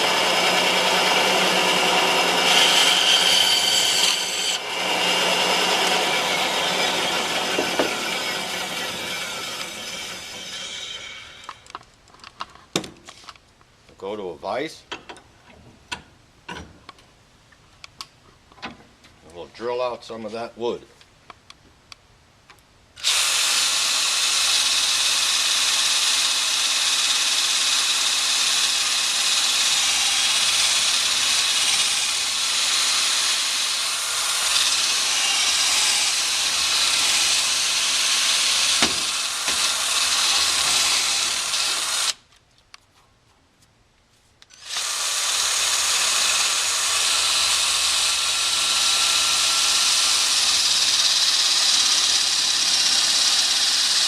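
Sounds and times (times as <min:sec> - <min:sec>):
electric drill boring wood: 0:00.0 - 0:11.6, 0:23.0 - 0:42.2, 0:44.5 - 0:54.0.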